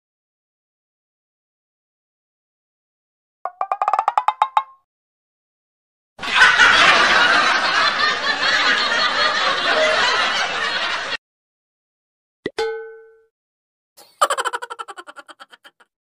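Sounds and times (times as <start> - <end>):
rapid clicks rising in pitch: 3.5 - 4.8
crowd laughter: 6.2 - 11.2, 14.0 - 15.9.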